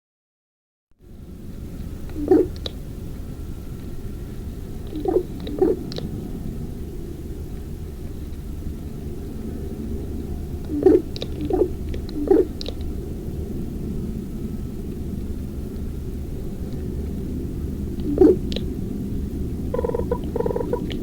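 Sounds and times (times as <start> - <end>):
steady low rumble: 1.0 - 21.0
ravens croaking: 2.2 - 2.8, 4.9 - 6.1, 10.7 - 12.8, 18.0 - 18.6, 19.6 - 21.0.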